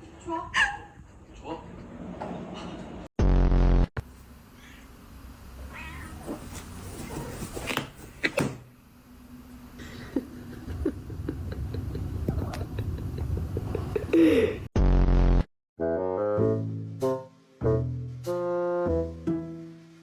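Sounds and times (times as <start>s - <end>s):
cat meowing: 5.7s - 6.3s.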